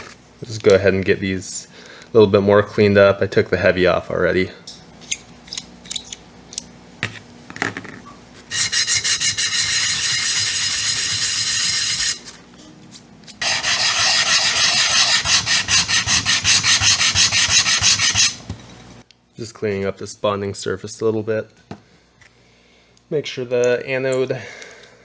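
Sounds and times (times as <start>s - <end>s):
hand scrubbing metal plate: 8.5s - 12.3s, 13.4s - 18.4s.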